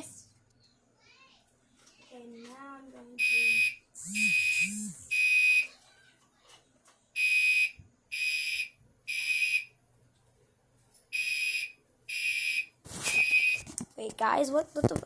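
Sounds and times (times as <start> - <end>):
fire alarm horn blasts: 3.2 - 5.7, 7.2 - 9.7, 11.1 - 13.6.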